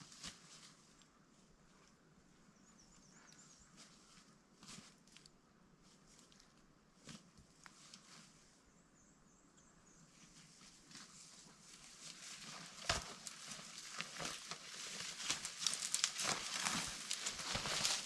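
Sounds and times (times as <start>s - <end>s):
footsteps crunching through brush: 10.3s - 18.0s
twig snapping: 15.3s - 17.8s.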